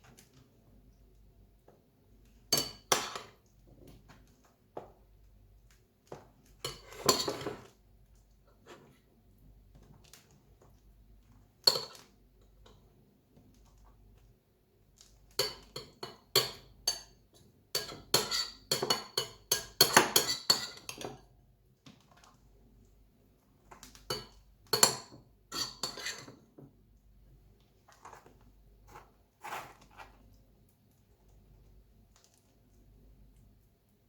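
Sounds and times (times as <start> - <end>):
cutlery clinking on a dish: 2.6 - 3.4, 6.6 - 7.8, 11.6 - 12.1, 15.4 - 17.1, 17.8 - 21.2, 24.1 - 26.5.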